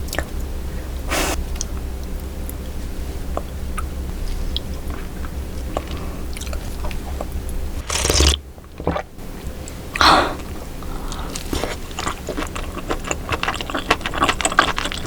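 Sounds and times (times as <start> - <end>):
steady low hum: 0.0 - 15.0
chewing and biting: 4.5 - 15.0.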